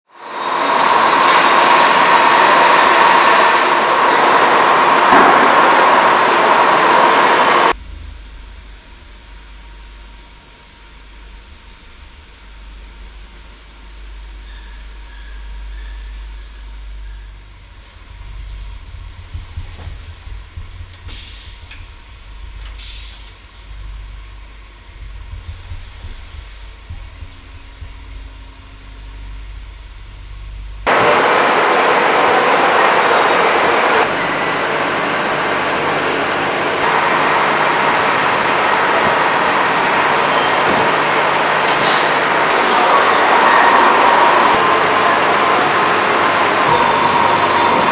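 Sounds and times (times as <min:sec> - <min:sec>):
faint high whine: 0:00.2 - 0:18.6, 0:26.4 - 0:47.9
machine rumble: 0:04.0 - 0:47.9
loud steady hiss: 0:28.4 - 0:34.3, 0:36.8 - 0:47.9.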